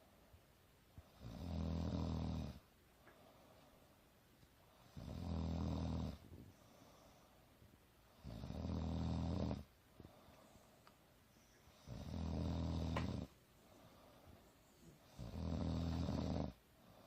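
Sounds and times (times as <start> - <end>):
woman snoring: 1.2 - 2.6, 4.8 - 6.2, 8.2 - 9.7, 11.7 - 13.3, 15.1 - 16.6.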